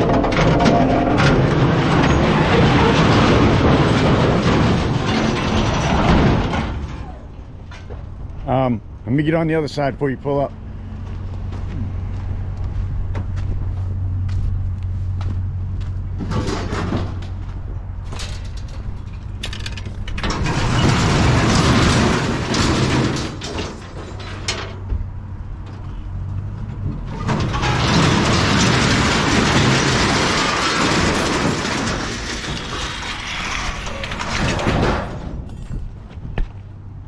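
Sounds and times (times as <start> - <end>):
scrap metal clattering and scraping: 0.0 - 8.4, 15.8 - 36.6.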